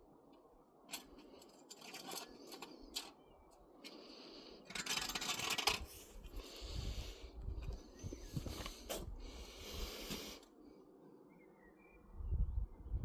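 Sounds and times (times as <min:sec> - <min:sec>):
scraping and rustling: 0:00.9 - 0:03.2, 0:04.7 - 0:06.6, 0:07.5 - 0:09.2.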